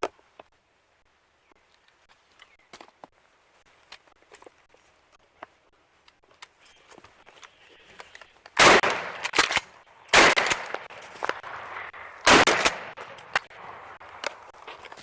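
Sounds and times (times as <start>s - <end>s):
shotgun shots echoing: 8.6s - 13.4s.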